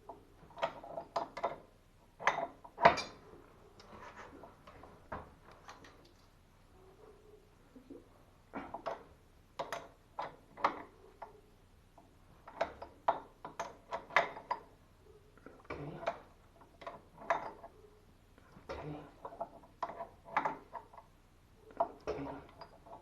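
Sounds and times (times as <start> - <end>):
tools clicking and knocking: 0.0 - 3.3, 8.6 - 14.8, 15.6 - 17.8, 18.5 - 23.0.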